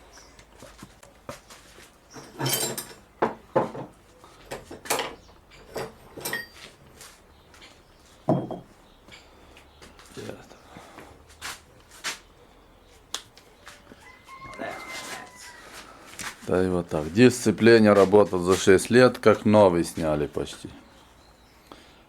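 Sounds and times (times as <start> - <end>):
metal hand tools clattering: 2.1 - 3.1, 4.6 - 6.7.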